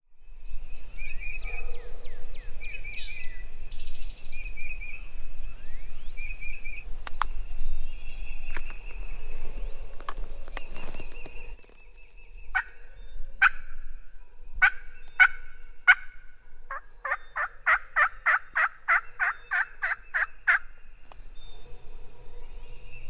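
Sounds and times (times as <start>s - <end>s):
songbirds chirping: 0.1s - 23.0s.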